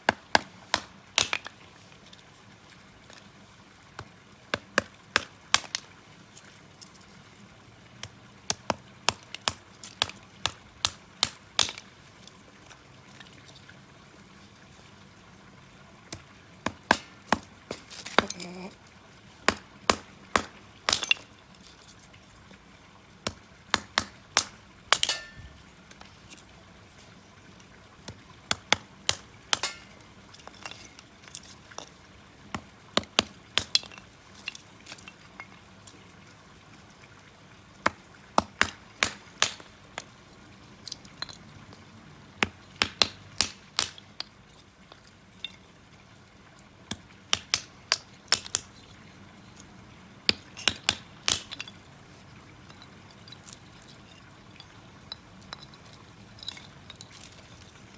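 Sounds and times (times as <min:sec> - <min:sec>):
wood fire snapping and clinking: 0:19.5 - 0:21.4, 0:23.8 - 0:25.6, 0:28.7 - 0:32.0.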